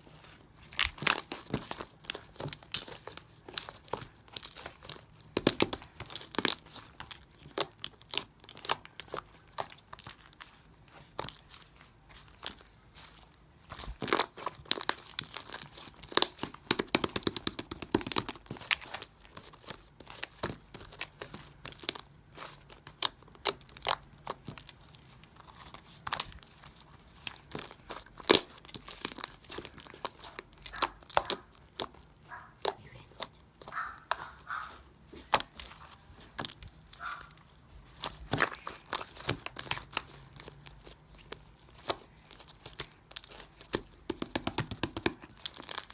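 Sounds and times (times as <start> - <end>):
slime popping and crinkling: 0.0 - 45.9
slime squeaks: 27.1 - 44.0.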